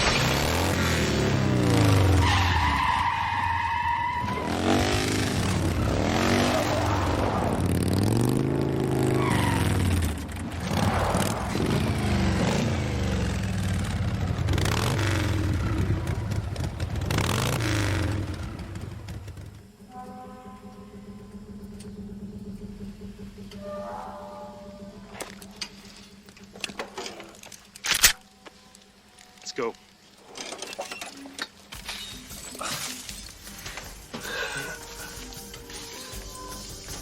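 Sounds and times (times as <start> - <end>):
vehicle engines revving: 0.0 - 19.8
tyre squeal: 2.1 - 4.9, 9.0 - 11.6.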